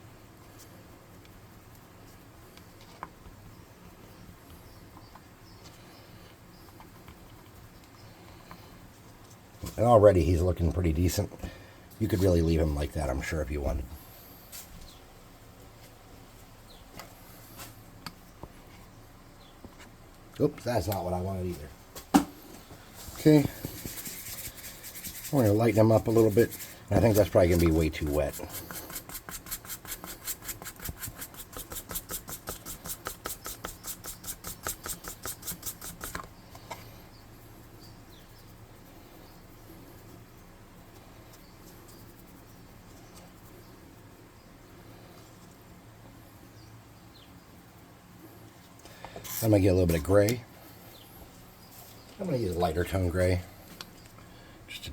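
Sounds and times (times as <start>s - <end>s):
faint room noise: 0.0s - 54.9s
paintbrush scratching plastic: 23.0s - 36.6s, 37.3s - 44.3s.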